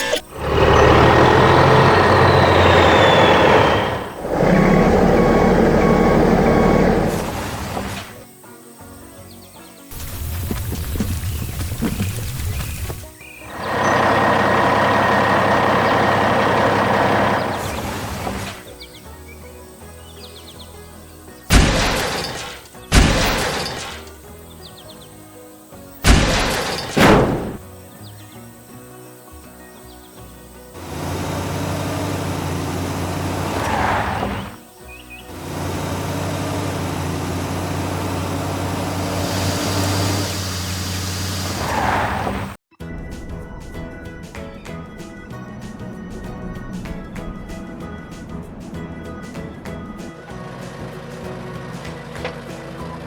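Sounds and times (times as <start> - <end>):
reversing alarm beeping: 0.0 - 7.7
loud crashing sound effects: 0.0 - 8.2, 21.5 - 24.1, 26.0 - 27.6
truck engine running: 0.0 - 8.2, 9.9 - 19.8, 26.0 - 28.0, 29.8 - 42.6, 43.8 - 53.0
background music: 0.0 - 40.1, 42.7 - 53.0.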